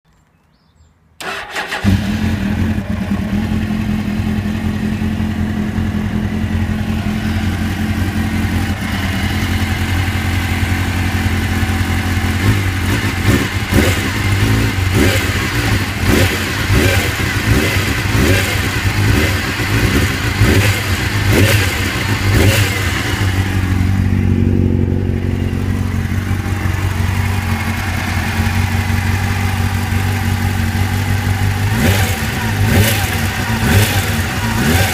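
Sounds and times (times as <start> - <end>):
engine ticking: 1.2 - 34.9
motorcycle engine idling: 1.2 - 34.9.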